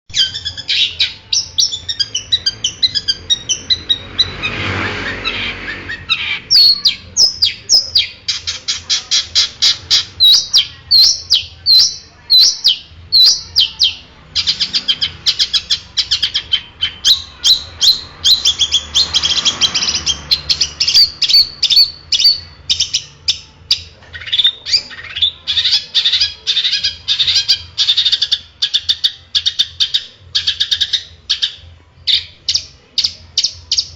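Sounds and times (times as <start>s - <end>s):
harsh rasping bird call: 0.1s - 23.2s
bird singing high chirps and trills: 0.1s - 33.9s.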